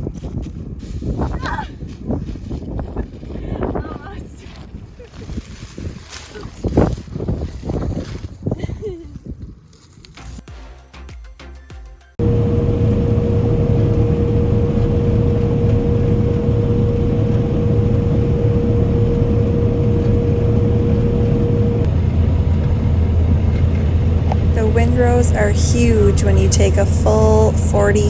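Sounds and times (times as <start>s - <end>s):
combine harvester drone: 12.2s - 28.0s
harvester whine: 12.2s - 28.0s.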